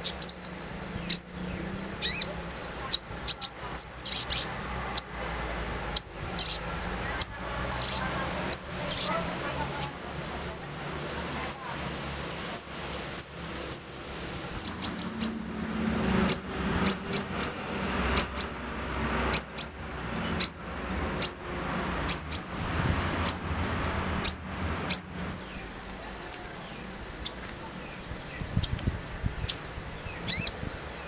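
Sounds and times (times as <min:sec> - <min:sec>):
bird giving sharp chirps: 0:00.0 - 0:00.4, 0:01.0 - 0:02.3, 0:02.9 - 0:05.2, 0:05.9 - 0:09.2, 0:12.5 - 0:15.4, 0:16.3 - 0:17.6, 0:18.2 - 0:18.6, 0:19.3 - 0:19.8, 0:20.4 - 0:21.4, 0:22.1 - 0:22.6, 0:23.2 - 0:23.6, 0:24.2 - 0:25.6, 0:28.3 - 0:30.6.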